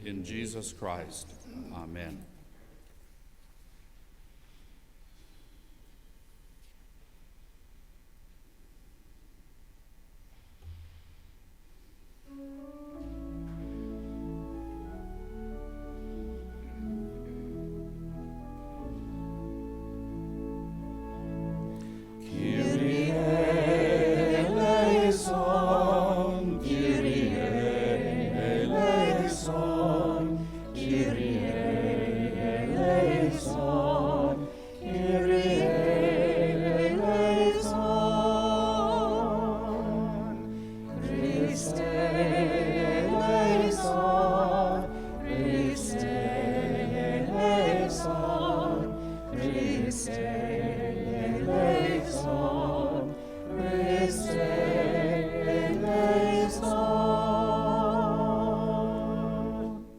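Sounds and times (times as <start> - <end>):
sustained low accompaniment: 12.2 - 59.9
choir singing sacred music: 12.3 - 59.9.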